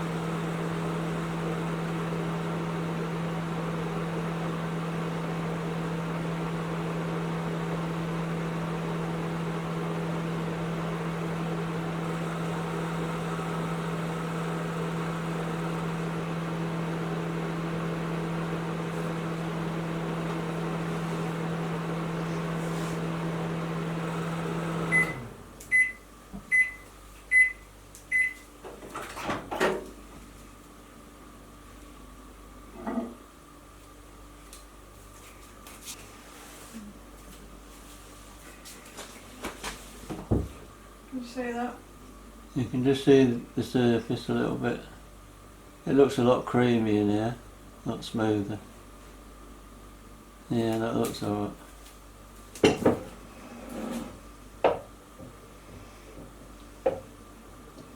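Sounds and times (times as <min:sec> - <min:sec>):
microwave oven humming: 0:00.0 - 0:57.9
high microwave beeps: 0:24.8 - 0:28.5.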